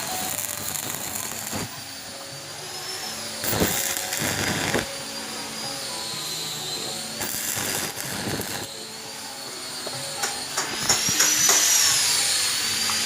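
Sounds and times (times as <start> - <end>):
high wavering whine: 0.0 - 13.0
welding arc crackling hiss: 0.0 - 13.0.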